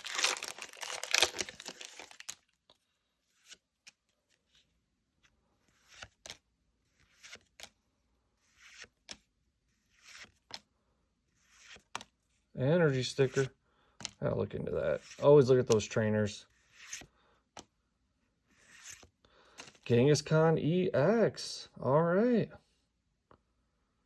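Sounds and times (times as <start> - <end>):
foil wrapper crinkling and tearing: 0.0 - 2.6
cards sliding off a stack: 7.0 - 7.8, 9.9 - 10.7, 16.6 - 17.7, 18.5 - 19.8.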